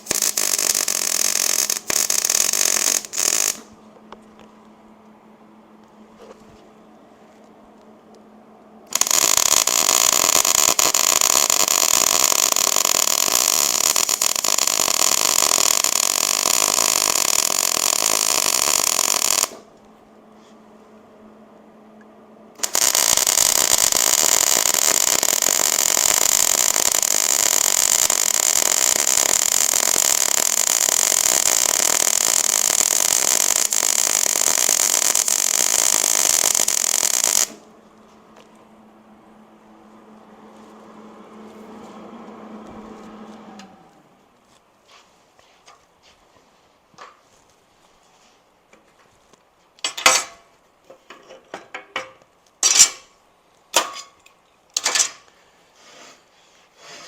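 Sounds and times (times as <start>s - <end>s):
welding arc crackle: 0.0s - 3.7s, 8.9s - 19.7s, 22.6s - 37.7s.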